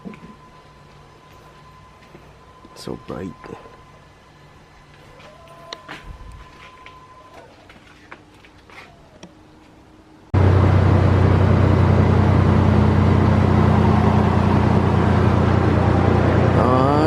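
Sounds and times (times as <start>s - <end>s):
vehicle engine running: 10.3s - 17.0s.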